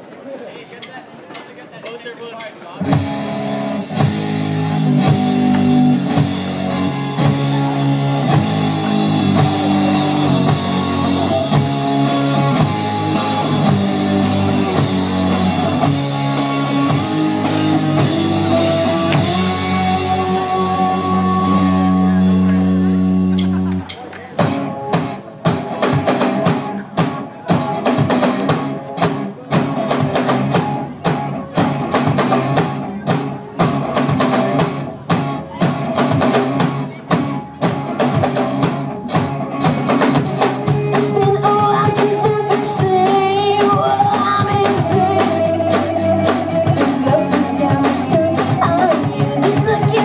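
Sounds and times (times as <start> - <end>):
drum kit beat: 0.8 - 50.0
rock band playing: 0.8 - 50.0
sustained melodic line: 3.8 - 23.7.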